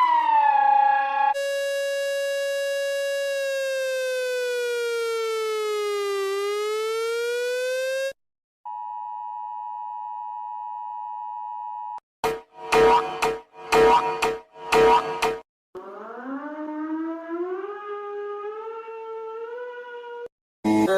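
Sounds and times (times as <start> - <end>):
buzzy electronic siren tone: 0.0 - 8.2, 12.2 - 20.3
high-pitched steady tone: 12.2 - 15.4.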